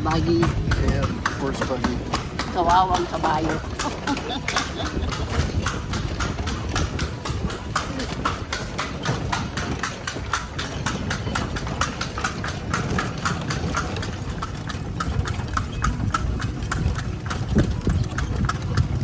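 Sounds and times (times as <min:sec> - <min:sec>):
horse hooves clip-clopping: 0:00.0 - 0:19.0.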